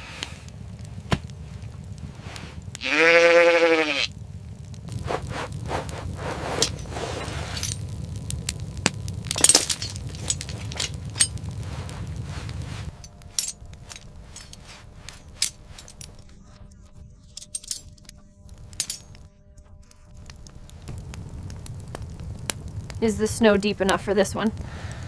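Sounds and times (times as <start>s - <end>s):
low rumble: 0.0s - 3.5s, 4.1s - 25.0s
sharp clinks and clicks: 6.6s - 7.8s, 9.3s - 11.4s, 12.9s - 16.2s, 17.3s - 18.1s, 18.7s - 19.2s.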